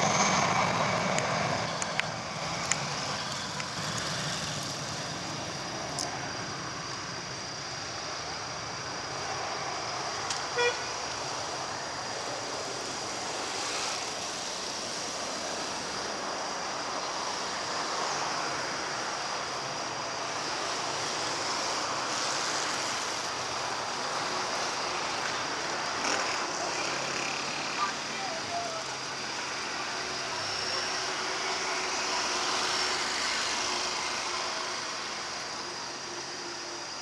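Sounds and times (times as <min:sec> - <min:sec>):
traffic noise: 0:00.0 - 0:37.0
vehicle horn toot: 0:10.6 - 0:10.9.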